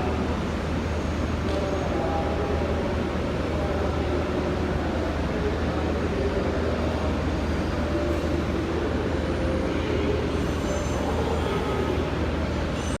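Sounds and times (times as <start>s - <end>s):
electric train rumbling: 0.0s - 13.0s.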